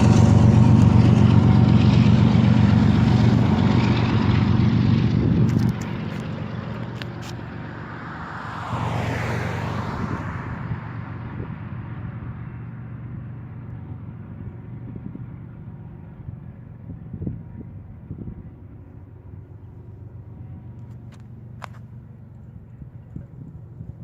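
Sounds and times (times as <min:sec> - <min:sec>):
freight train rumbling past: 0:00.0 - 0:24.0.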